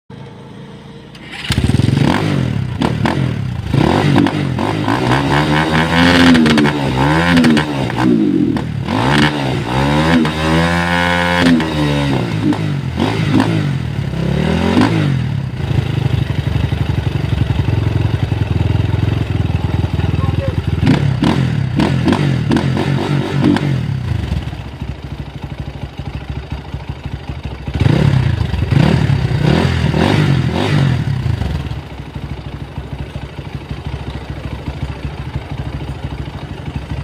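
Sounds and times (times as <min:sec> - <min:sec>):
engine revving: 0:01.1 - 0:16.1, 0:20.2 - 0:24.5, 0:27.7 - 0:31.8.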